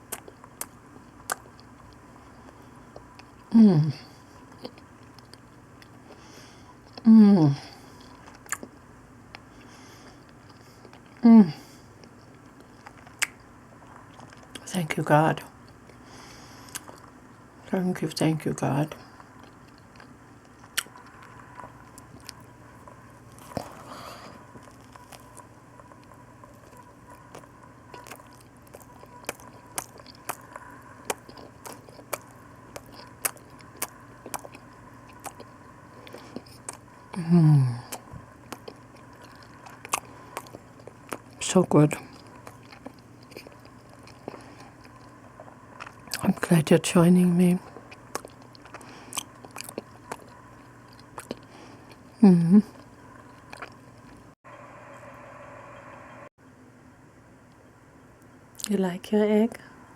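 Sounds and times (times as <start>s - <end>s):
person chewing food: 0.0s - 7.1s, 7.7s - 14.6s, 15.5s - 17.2s, 18.9s - 46.2s, 47.6s - 54.4s
faint electrical hum: 0.0s - 59.9s
woman humming mmm: 3.5s - 4.2s, 7.0s - 7.8s, 11.2s - 11.7s, 37.1s - 38.1s, 52.2s - 52.8s.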